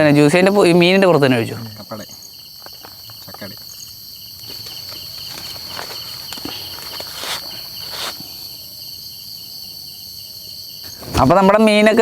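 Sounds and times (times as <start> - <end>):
insects chirring: 0.0 - 12.0
pulsing insect chirp: 0.0 - 12.0
handling rustles and knocks: 2.6 - 8.5.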